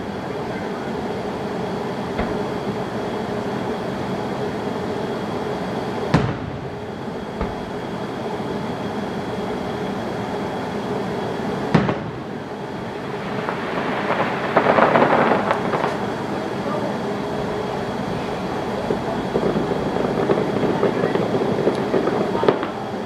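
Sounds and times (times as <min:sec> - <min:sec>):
fireworks crackling: 0:00.0 - 0:23.0
steady droning background: 0:00.0 - 0:23.0
firework bangs: 0:00.7 - 0:23.0.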